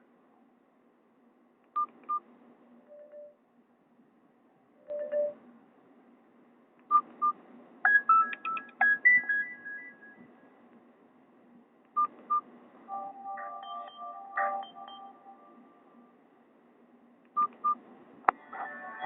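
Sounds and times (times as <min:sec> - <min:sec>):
phone beeps: 0:12.0 - 0:15.7
electronic ringtone melody: 0:12.9 - 0:15.9.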